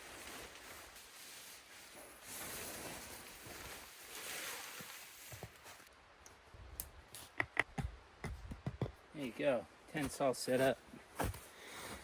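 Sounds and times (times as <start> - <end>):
tent fabric rustling: 0.0 - 5.9
sharp clicks and taps: 6.8 - 9.0.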